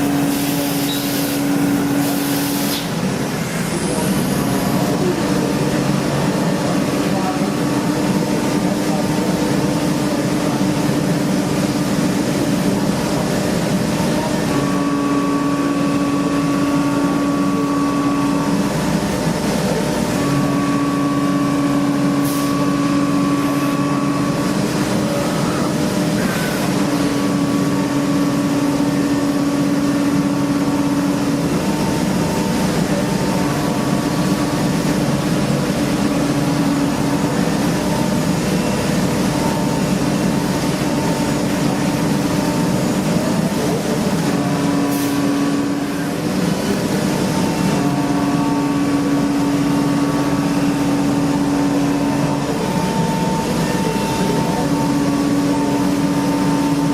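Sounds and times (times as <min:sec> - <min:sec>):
machine mechanical hum: 0:00.0 - 0:56.9
machine held tone: 0:20.1 - 0:56.9.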